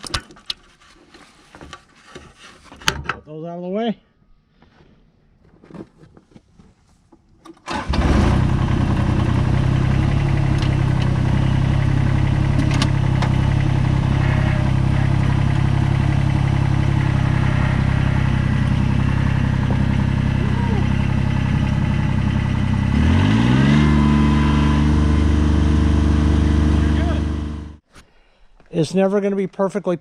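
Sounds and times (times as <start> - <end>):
diesel engine starting and running: 7.5 - 27.8.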